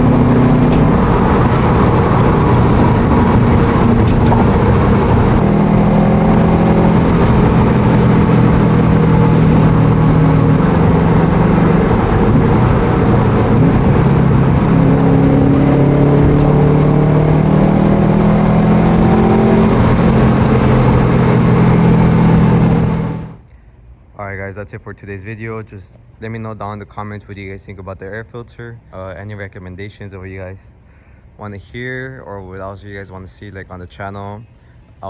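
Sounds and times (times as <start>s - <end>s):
car engine and loud exhaust: 0.0s - 23.5s.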